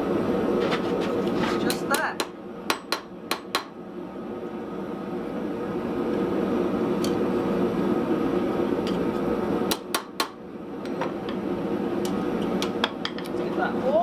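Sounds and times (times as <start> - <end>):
forge humming: 0.0 - 14.0
hammer striking metal: 1.7 - 3.7.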